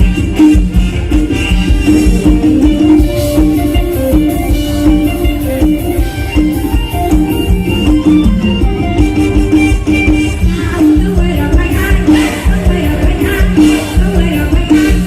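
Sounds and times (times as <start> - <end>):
plucked string lead melody: 0.0 - 13.4
bass: 0.0 - 15.0
steady driving beat: 0.0 - 15.0.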